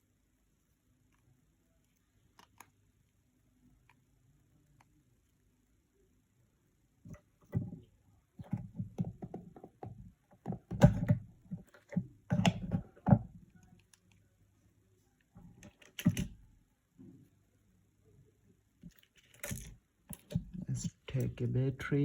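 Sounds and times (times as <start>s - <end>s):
knocks clicks and taps on phone: 7.1s - 13.3s.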